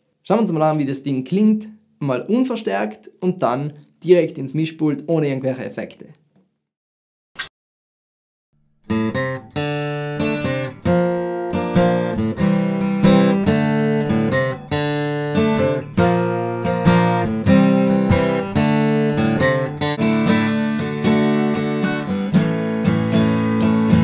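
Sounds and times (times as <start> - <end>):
steel-string guitar strummed chords: 8.9 - 24.0.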